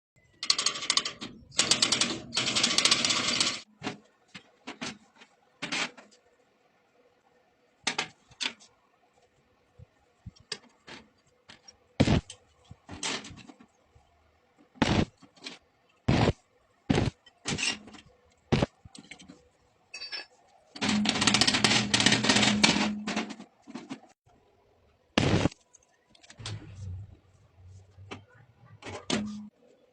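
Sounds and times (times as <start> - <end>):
crackling welding noise: 11.9 - 12.9, 14.8 - 15.3, 16.0 - 17.7, 18.3 - 19.2, 25.2 - 27.0.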